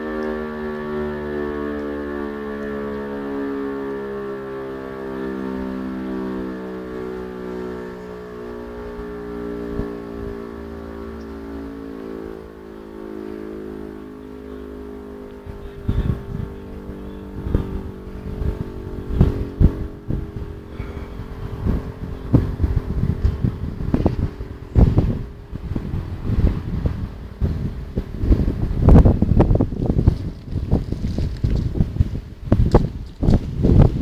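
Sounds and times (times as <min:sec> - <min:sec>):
civil defence siren winding down: 0:00.0 - 0:34.0
wind buffeting microphone: 0:12.2 - 0:34.0.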